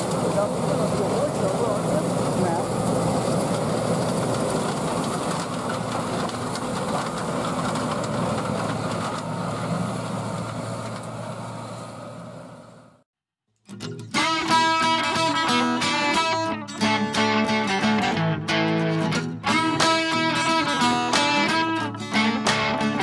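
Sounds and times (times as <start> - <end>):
mechanical clatter: 0.0 - 11.3
heavy machinery engine hum: 0.0 - 13.0.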